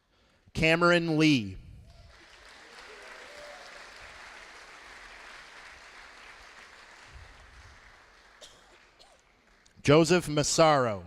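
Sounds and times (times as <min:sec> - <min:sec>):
audience applauding: 0:01.9 - 0:09.8.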